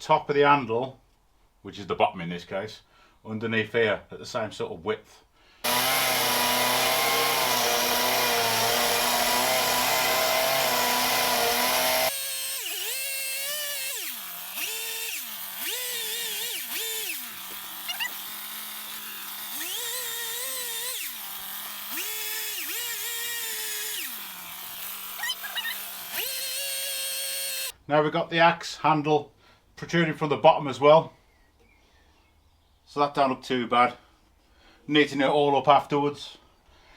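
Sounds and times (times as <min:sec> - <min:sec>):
chainsaw cutting at full throttle: 0:05.6 - 0:27.7
chainsaw revving and idling: 0:05.6 - 0:27.8.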